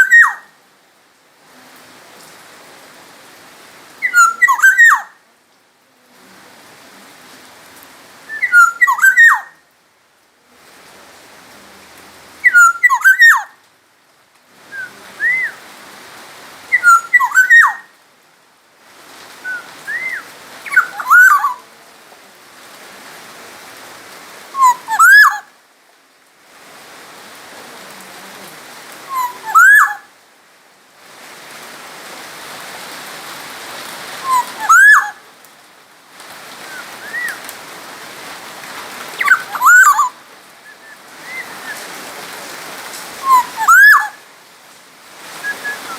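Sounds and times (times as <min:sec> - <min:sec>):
bird singing whistled phrases: 0:00.0 - 0:00.4, 0:04.0 - 0:05.1, 0:08.3 - 0:09.5, 0:12.5 - 0:13.5, 0:14.7 - 0:15.6, 0:16.7 - 0:17.9, 0:19.4 - 0:21.6, 0:24.6 - 0:25.4, 0:29.1 - 0:30.0, 0:34.2 - 0:35.1, 0:36.7 - 0:37.4, 0:39.2 - 0:41.9, 0:43.2 - 0:44.2, 0:45.4 - 0:45.9
steady hiss: 0:00.0 - 0:45.9.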